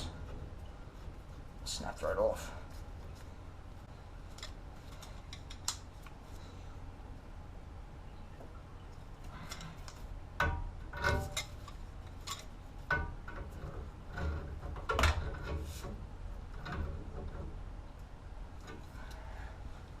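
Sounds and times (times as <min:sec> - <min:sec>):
clicks and knocks on metal fittings: 0:04.3 - 0:06.2, 0:09.4 - 0:19.2.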